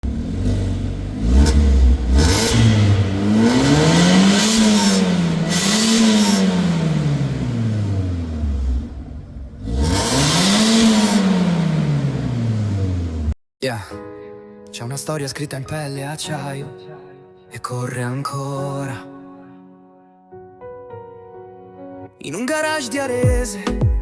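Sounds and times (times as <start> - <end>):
car engine revving: 0.0 - 13.4.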